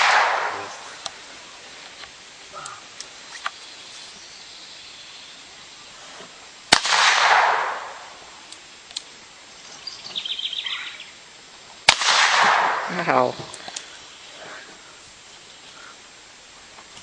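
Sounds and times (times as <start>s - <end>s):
pistol shot: 0.0s - 1.0s, 6.7s - 8.1s, 11.9s - 13.0s
faint clicks: 1.8s - 3.7s, 8.4s - 9.1s, 13.5s - 14.0s.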